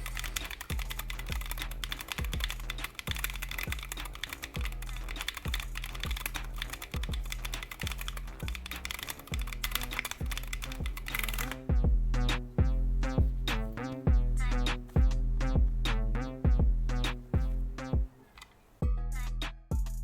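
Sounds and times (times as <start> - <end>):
fast keyboard typing: 0.0 - 11.7
background music with bass beat: 9.4 - 18.1, 18.8 - 20.0.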